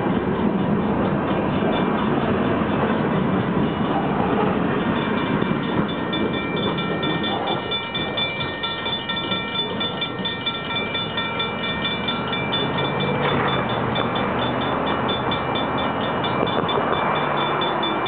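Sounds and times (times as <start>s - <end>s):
freight train rumbling past: 0.0s - 18.0s
bell ringing rapidly: 4.8s - 18.0s.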